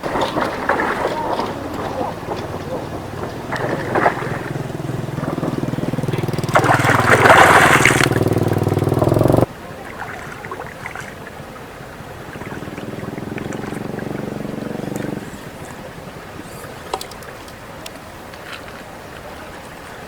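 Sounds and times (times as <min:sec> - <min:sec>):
small engine running: 0:00.0 - 0:09.5, 0:12.1 - 0:17.2.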